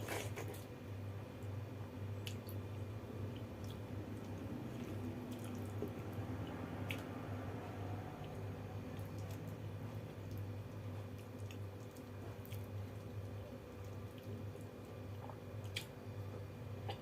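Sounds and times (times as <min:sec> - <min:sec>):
low hum: 0:01.1 - 0:17.0
wet chewing: 0:03.3 - 0:07.2, 0:08.0 - 0:15.9.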